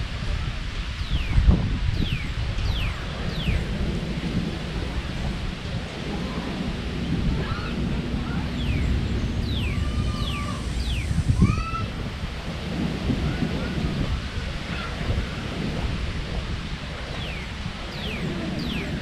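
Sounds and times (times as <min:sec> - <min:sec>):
beach surf: 0:00.0 - 0:19.0
wind: 0:00.0 - 0:19.0
birds chirping: 0:00.9 - 0:11.9, 0:17.1 - 0:19.0.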